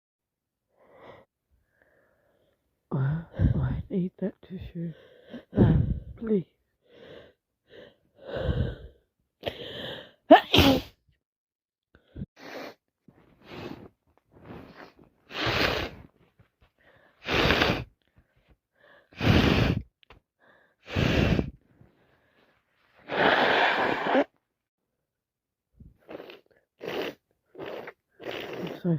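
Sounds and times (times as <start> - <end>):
woman sneezing: 10.3 - 11.0
quick breaths: 12.1 - 24.3.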